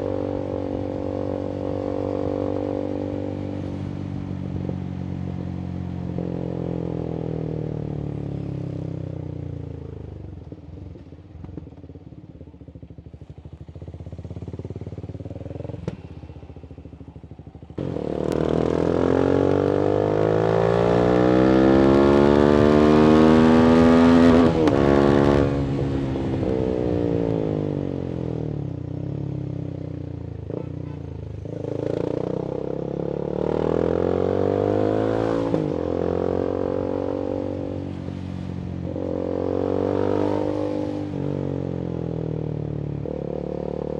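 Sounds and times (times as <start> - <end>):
motorcycle engine revving: 13.3 - 43.9.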